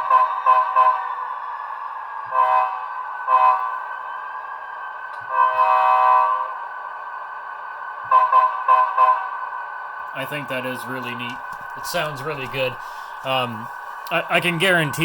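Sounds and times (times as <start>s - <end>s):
model train horn from small speaker: 0.0s - 1.0s, 2.2s - 3.8s, 5.2s - 6.6s, 8.1s - 9.3s.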